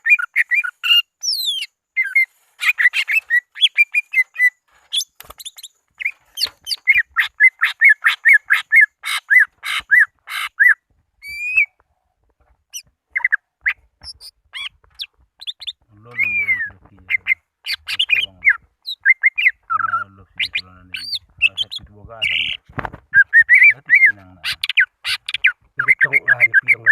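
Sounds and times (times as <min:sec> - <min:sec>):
bird chirping and whistling: 0:00.0 - 0:11.7, 0:14.0 - 0:26.9
harsh buzzy bird call: 0:15.4 - 0:26.9.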